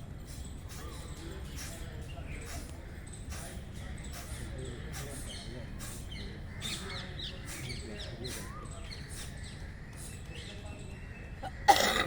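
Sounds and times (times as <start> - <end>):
faint birds chirping: 0.3 - 12.0
forceful breaths through nose: 9.0 - 10.3.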